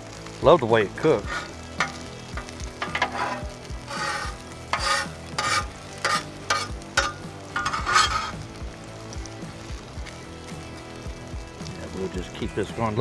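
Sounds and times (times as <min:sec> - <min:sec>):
food sizzling on a griddle: 0:00.0 - 0:13.0
metal utensil scraping griddle: 0:01.0 - 0:09.7.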